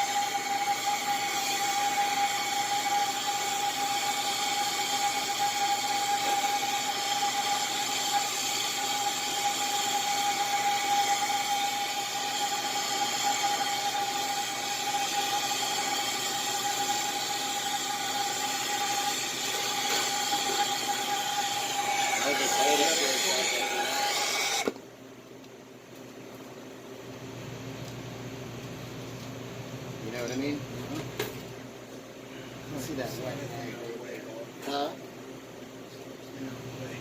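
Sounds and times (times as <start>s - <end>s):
torch flame hissing: 0.0s - 24.8s
constant high whine: 0.0s - 24.9s.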